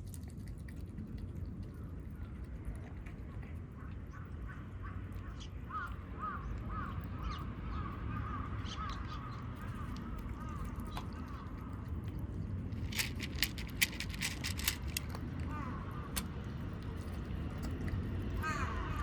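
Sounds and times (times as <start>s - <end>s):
sharp clicks: 12.8s - 15.5s.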